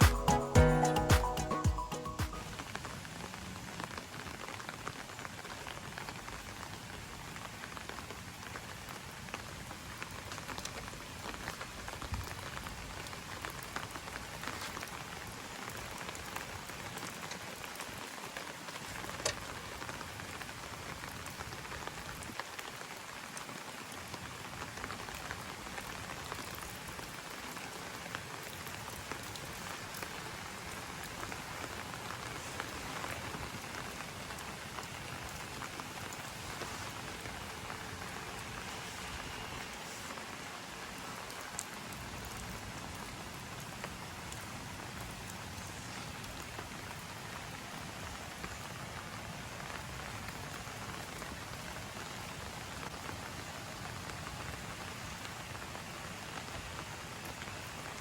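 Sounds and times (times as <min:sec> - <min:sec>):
rain pattering: 0:00.0 - 0:58.0.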